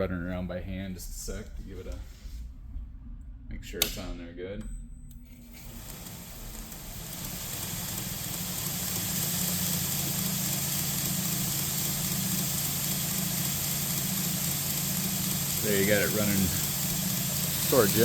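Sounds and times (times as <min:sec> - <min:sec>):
belt grinder running: 0:05.5 - 0:18.0.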